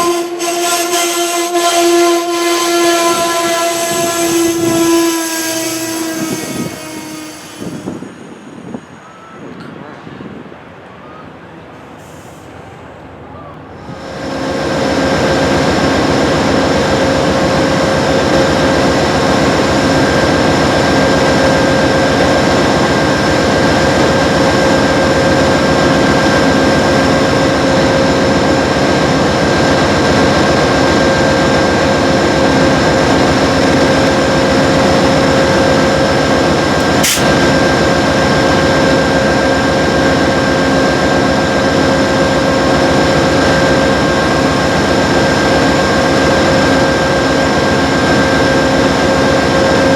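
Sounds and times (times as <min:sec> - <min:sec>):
diesel locomotive engine drone: 0:00.0 - 0:49.9
sharp click: 0:36.8 - 0:37.4.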